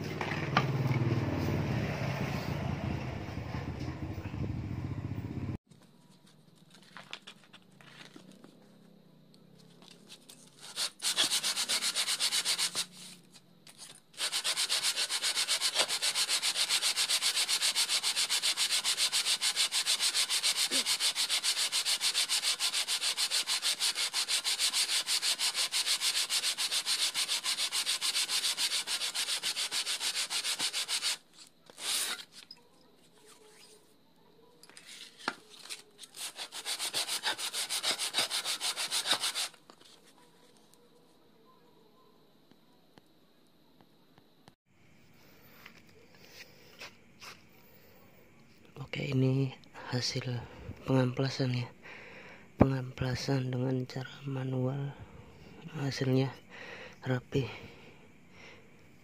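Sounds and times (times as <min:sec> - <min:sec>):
cylinder head scraping on sandpaper: 0:09.8 - 0:32.5, 0:34.8 - 0:40.2.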